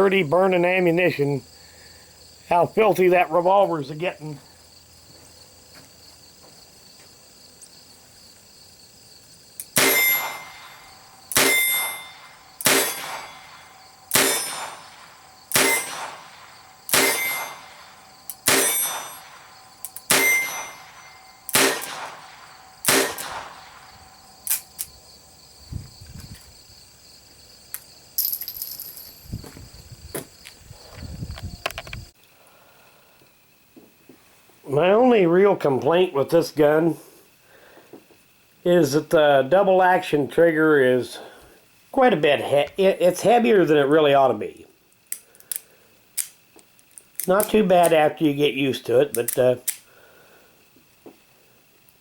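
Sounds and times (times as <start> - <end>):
revolver shots with metallic ring: 9.7 - 23.9
gun clicks and handling noises: 19.8 - 20.2, 24.5 - 24.9, 44.9 - 48.0, 49.1 - 49.9.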